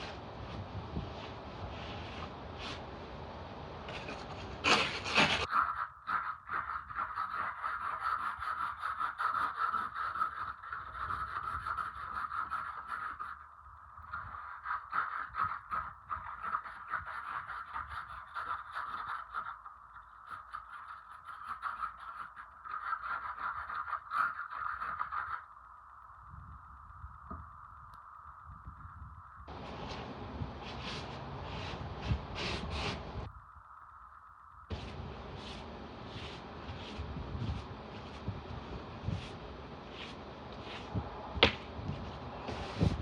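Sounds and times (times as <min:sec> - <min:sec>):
ice scraped off vehicle: 0:04.0 - 0:05.5.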